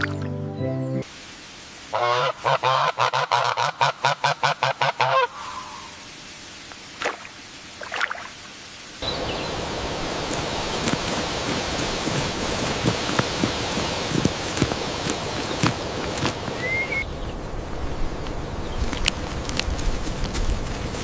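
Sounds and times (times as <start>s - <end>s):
steady rustling: 10.0s - 17.0s.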